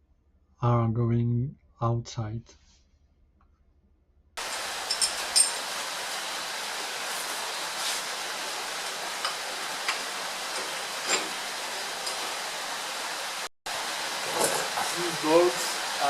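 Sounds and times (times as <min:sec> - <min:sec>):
steady hiss: 0:04.4 - 0:16.0.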